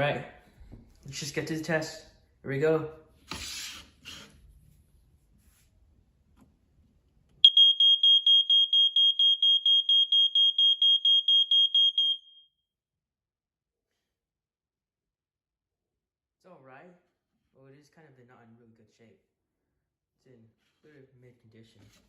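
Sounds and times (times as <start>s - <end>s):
smoke alarm beeping: 7.4s - 12.5s.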